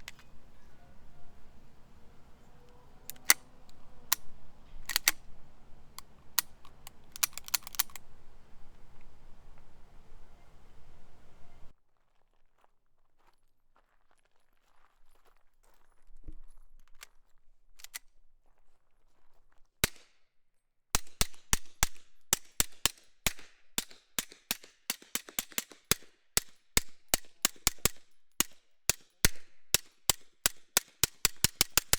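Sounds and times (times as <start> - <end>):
suppressed pistol shots: 3.0 - 8.0.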